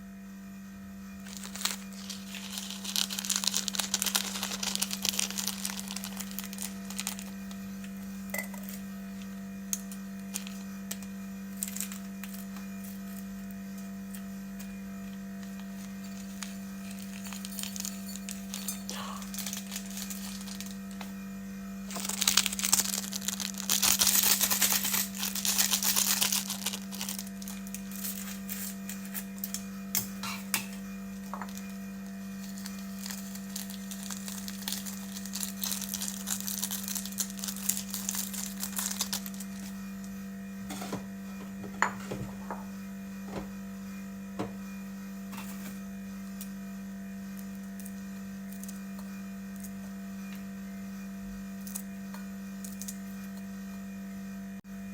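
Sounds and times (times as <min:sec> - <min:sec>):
low electrical hum: 0:00.0 - 0:54.9
plastic packaging crinkling: 0:01.2 - 0:07.9, 0:10.1 - 0:13.1, 0:15.4 - 0:21.0, 0:21.9 - 0:29.1, 0:31.4 - 0:39.7.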